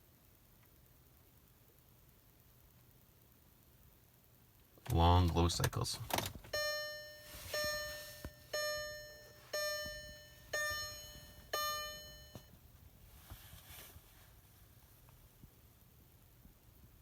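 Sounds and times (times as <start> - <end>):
car warning chime: 6.4 - 12.5.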